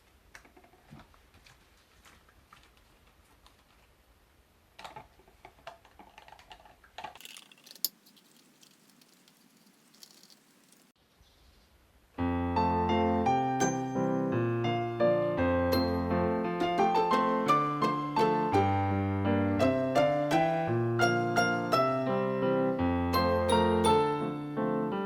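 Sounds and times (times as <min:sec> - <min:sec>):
keyboard piano music: 0:12.2 - 0:25.0.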